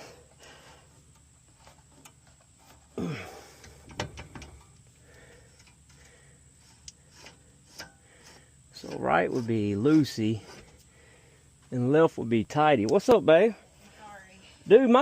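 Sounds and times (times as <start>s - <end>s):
light metal clicks and knocks: 3.6s - 4.9s.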